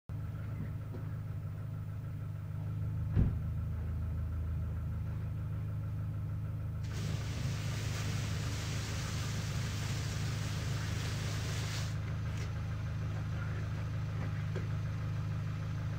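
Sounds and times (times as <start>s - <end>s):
steady hiss: 6.8s - 12.0s
motor humming: 6.8s - 12.5s.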